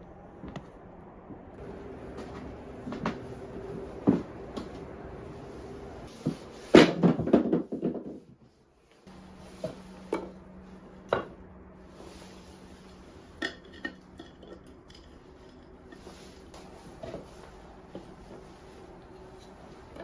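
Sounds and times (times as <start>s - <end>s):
pots and utensils clinking: 13.4s - 16.3s.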